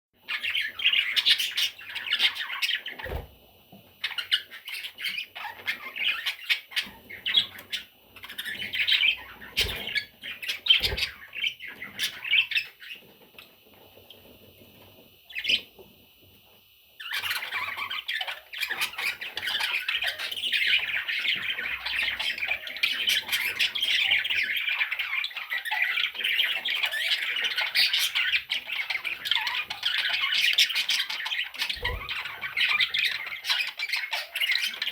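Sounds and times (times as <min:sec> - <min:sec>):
budgerigar chicks squawking: 0:04.0 - 0:12.8.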